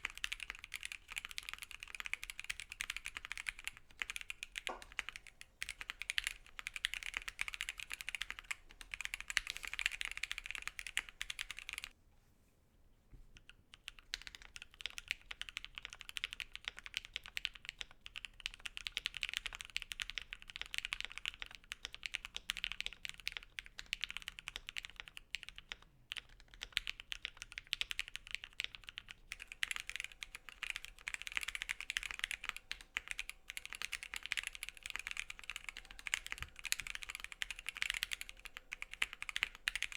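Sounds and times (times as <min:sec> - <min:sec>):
typing on mechanical keyboard: 0:00.0 - 0:11.9, 0:13.4 - 0:39.9.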